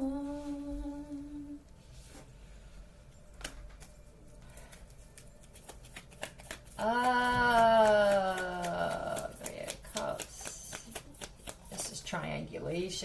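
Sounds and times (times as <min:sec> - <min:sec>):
person humming: 0:00.0 - 0:01.6, 0:06.8 - 0:09.5
cards being handled: 0:04.7 - 0:06.8, 0:07.5 - 0:12.0.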